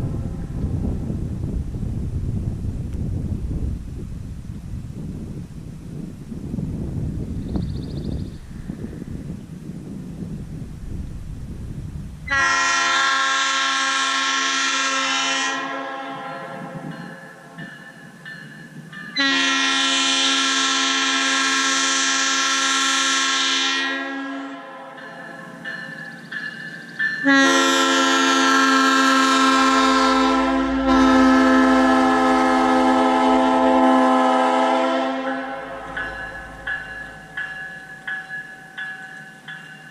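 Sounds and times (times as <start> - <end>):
low rumble: 0.0 - 9.4, 10.0 - 12.2, 30.0 - 32.9
locomotive air horn chord: 12.3 - 16.9, 19.2 - 25.1, 27.2 - 37.4.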